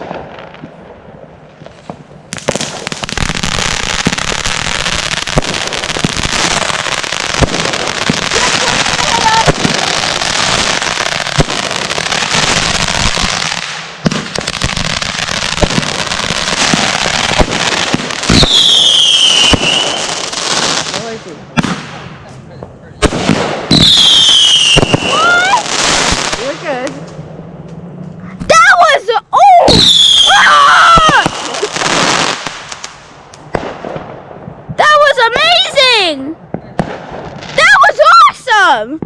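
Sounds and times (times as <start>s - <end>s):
firework bang: 1.6s - 22.2s, 23.0s - 27.0s
firework hissing and crackling: 1.7s - 22.0s, 23.0s - 27.0s, 29.7s - 33.6s.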